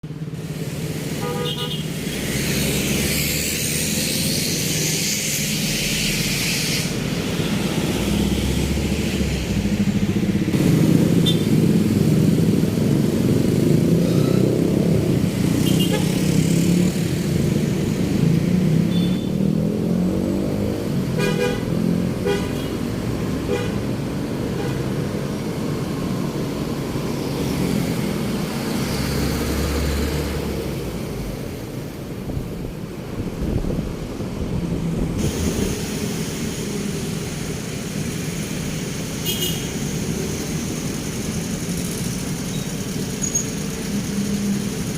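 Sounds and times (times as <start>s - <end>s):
vehicle engines passing: 0.0s - 44.9s
car horn toots: 1.2s - 1.8s
loud hiss: 35.2s - 43.7s.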